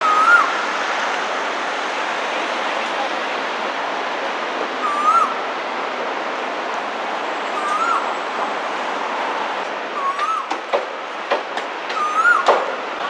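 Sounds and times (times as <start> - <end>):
bird swooping call: 0.0 - 0.5, 4.8 - 5.4, 7.6 - 8.1, 9.3 - 10.5, 12.0 - 12.5
busy street hiss: 0.0 - 13.0.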